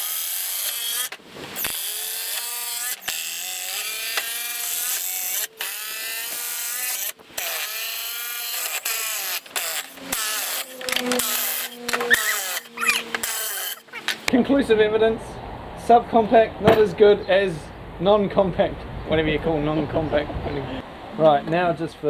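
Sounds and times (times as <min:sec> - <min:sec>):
impact drivers driving screws into wood: 0:00.0 - 0:14.2.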